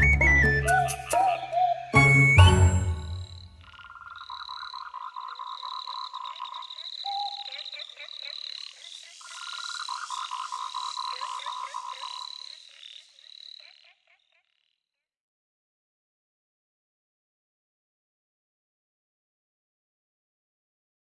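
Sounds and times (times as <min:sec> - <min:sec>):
frogs croaking: 0:02.9 - 0:15.0.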